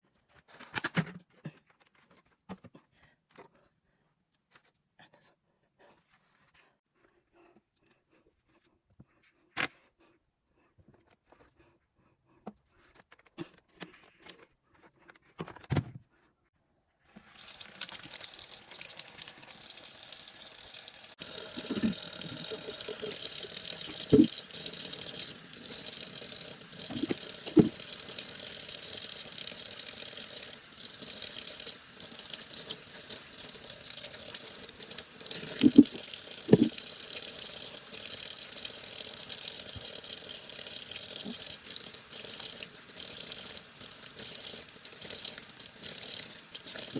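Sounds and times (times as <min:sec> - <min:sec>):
tap water running into sink: 0:17.1 - 0:46.9.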